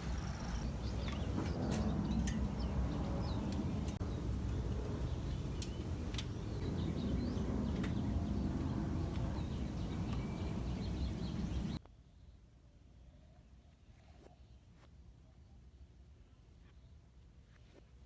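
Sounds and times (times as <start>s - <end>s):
small birds chirping: 0.0s - 11.8s.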